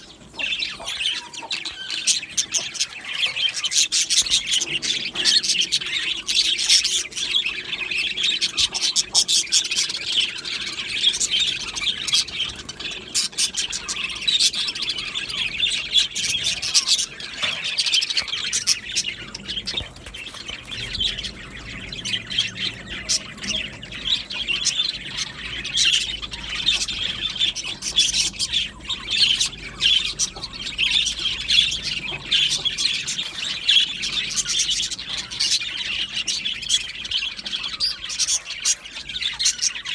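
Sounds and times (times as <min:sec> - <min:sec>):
budgerigars chattering: 0:00.0 - 0:39.9.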